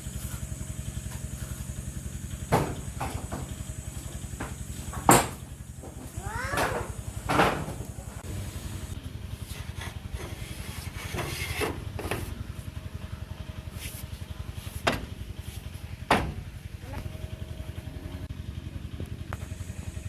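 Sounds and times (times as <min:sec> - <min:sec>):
small engine running: 0:00.0 - 0:20.0
sharp knocks: 0:16.1 - 0:16.4.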